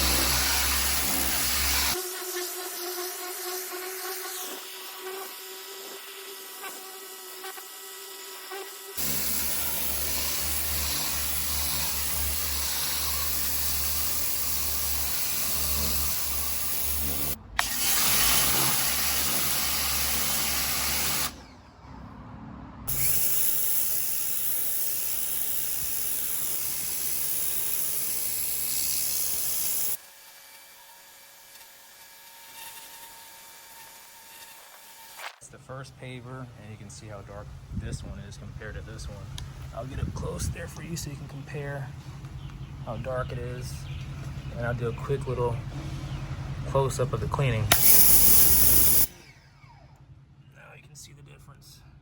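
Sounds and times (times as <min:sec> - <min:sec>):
pressure washer water jet hissing: 0:00.0 - 0:02.0, 0:08.9 - 0:21.4, 0:47.7 - 0:49.1.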